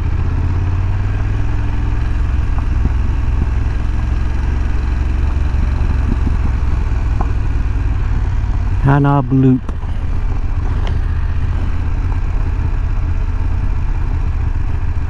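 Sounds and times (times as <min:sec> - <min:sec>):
motorcycle engine running: 0:00.0 - 0:15.0.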